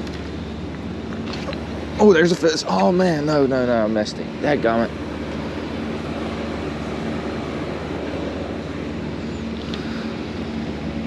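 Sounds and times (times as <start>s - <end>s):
engine drone: 0.0s - 11.0s.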